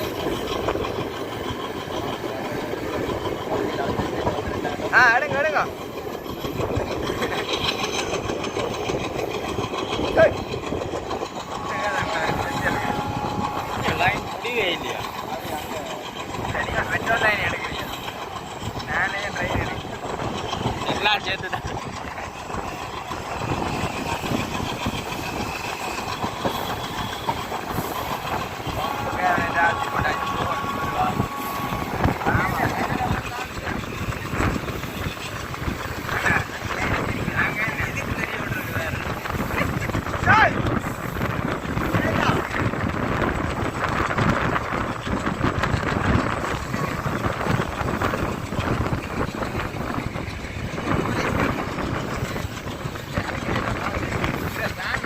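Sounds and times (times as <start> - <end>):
train wheels rumbling on rails: 0.0 - 55.0
wind buffeting microphone: 0.0 - 55.0.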